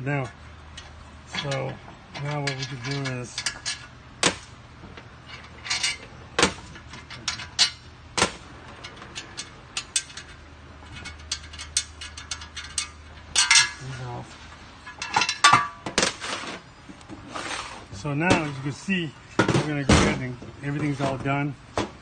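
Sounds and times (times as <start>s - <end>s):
metal parts clinking and knocking: 0.7s - 4.5s, 5.2s - 14.0s, 14.8s - 16.2s.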